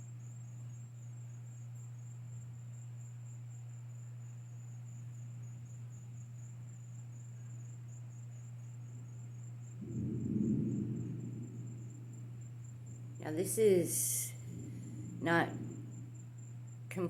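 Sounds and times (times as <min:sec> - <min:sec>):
crickets trilling: 0:00.0 - 0:17.0
steady low hum: 0:09.6 - 0:17.0.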